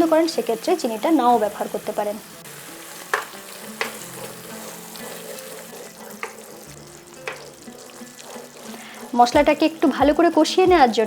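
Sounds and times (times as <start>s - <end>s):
paste sizzling in hot oil: 0.0s - 11.0s
spatula knocking against pan: 3.1s - 4.3s, 6.1s - 7.6s.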